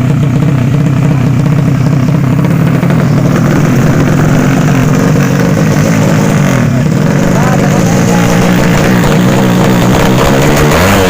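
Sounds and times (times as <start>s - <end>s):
motorcycle engine running loudly: 0.0s - 11.0s.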